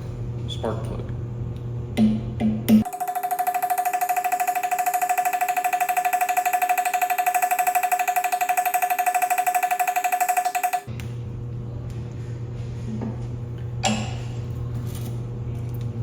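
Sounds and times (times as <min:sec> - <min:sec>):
pulsing electronic buzzing tone: 0:02.8 - 0:10.9.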